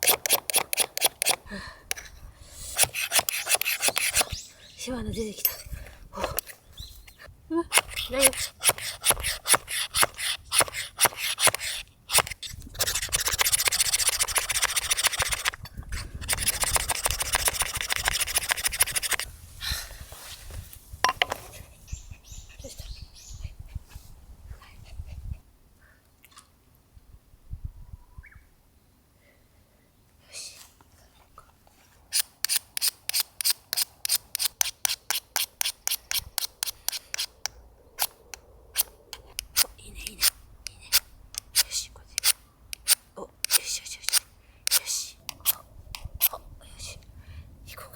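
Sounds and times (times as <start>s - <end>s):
striker scraping fire-starter rod: 0.0s - 4.4s, 5.2s - 19.3s, 21.0s - 21.6s, 32.1s - 46.1s.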